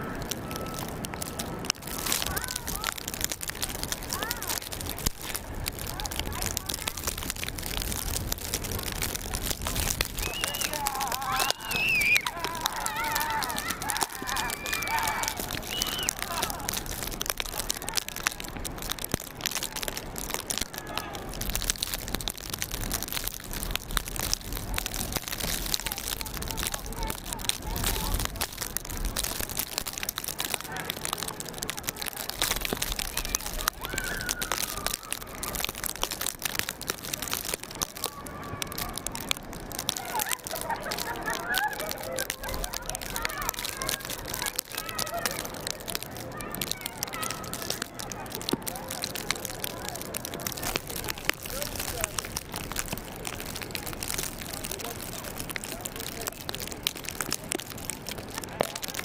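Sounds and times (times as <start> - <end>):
crackling crunching snow: 0.0 - 59.0
distant shouts and voices: 0.0 - 59.0
people calling out: 8.8 - 18.4, 33.0 - 35.7, 37.6 - 52.1.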